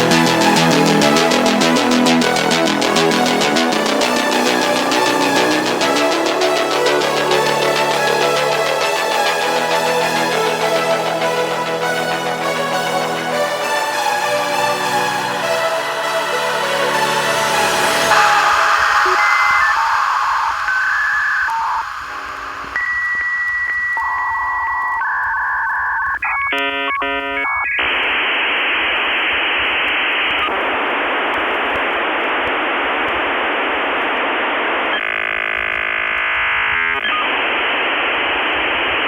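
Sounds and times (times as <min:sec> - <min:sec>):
steady hissing static: 0:00.0 - 0:39.0
dial-up modem tones: 0:18.1 - 0:39.0.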